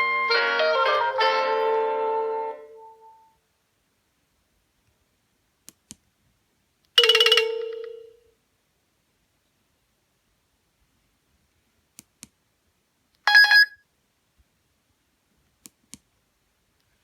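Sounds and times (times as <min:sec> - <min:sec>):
phone ringtone melody: 0:00.0 - 0:02.5, 0:07.0 - 0:08.2, 0:13.3 - 0:13.8.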